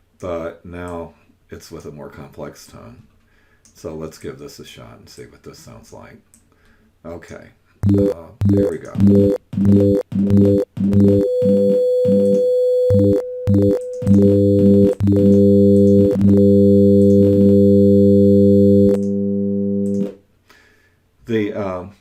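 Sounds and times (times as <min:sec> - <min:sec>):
pulsing compound tone: 0:07.8 - 0:20.1
clicks at tone switching: 0:07.8 - 0:20.2.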